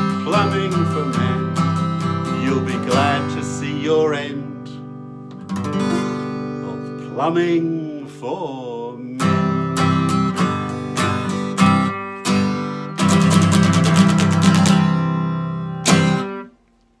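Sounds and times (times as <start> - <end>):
acoustic guitar strumming: 0.0 - 16.8.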